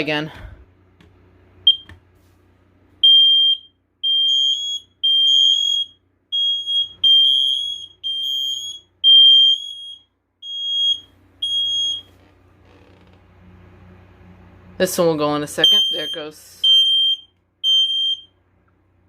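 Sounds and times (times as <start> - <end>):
smoke alarm beeps: 1.7 - 1.9, 3.0 - 12.1, 15.6 - 18.4.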